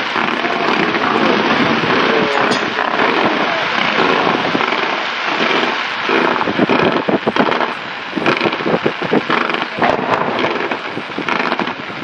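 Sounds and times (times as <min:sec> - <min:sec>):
firecrackers crackling: 0:00.0 - 0:12.0
sharp firecracker cracks: 0:00.0 - 0:12.0.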